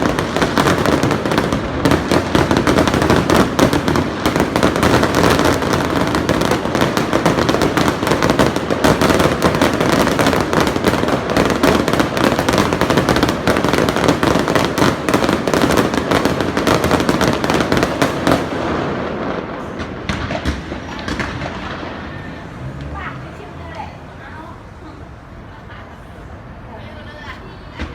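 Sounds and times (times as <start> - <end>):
fireworks bangs and crackling: 0.0 - 25.4, 27.4 - 27.9.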